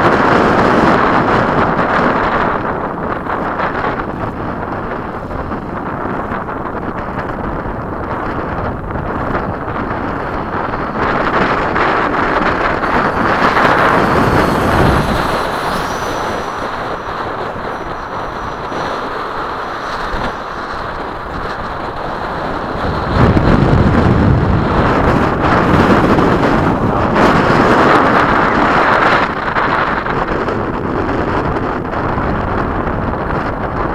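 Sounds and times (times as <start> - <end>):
electric ducted fan rushing: 0.0 - 33.9
wind buffeting microphone: 0.0 - 33.9
faint high whine: 9.1 - 24.2.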